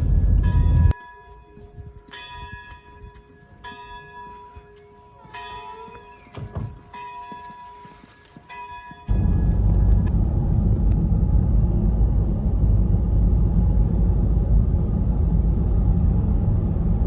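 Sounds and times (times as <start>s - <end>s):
church bell tolling: 0.0s - 1.6s.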